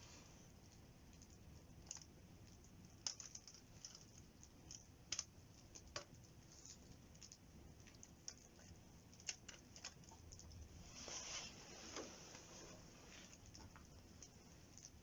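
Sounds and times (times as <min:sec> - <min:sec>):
campfire crackling and popping: 0:00.6 - 0:10.8.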